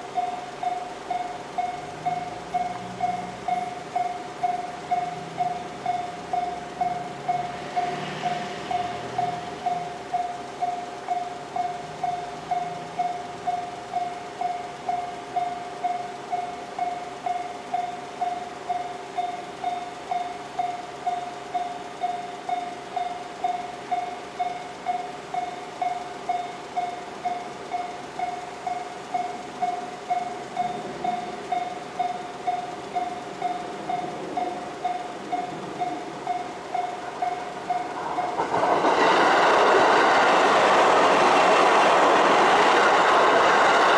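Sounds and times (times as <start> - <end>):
level crossing warning bell: 0.0 - 43.9
train passing: 0.0 - 43.9.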